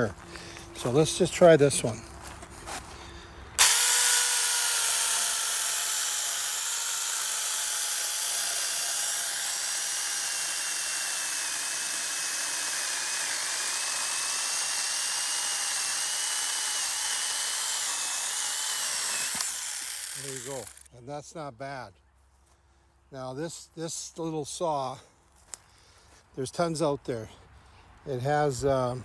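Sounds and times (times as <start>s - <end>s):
battery chainsaw cutting branch: 3.6s - 20.9s.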